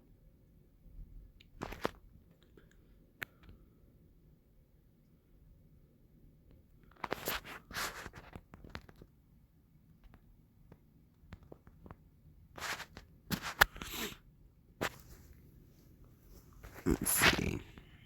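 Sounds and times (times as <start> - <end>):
scratchy rustling: 12.6 - 14.2, 14.8 - 17.8.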